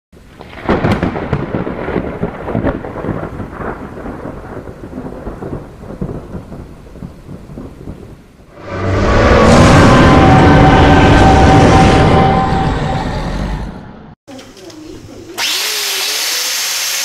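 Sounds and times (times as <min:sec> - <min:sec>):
rumbling crackling noise: 0:00.2 - 0:13.3.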